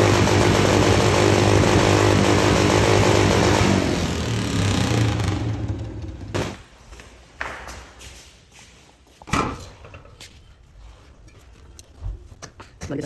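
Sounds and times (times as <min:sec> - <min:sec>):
motorcycle engine running: 0:00.0 - 0:06.6.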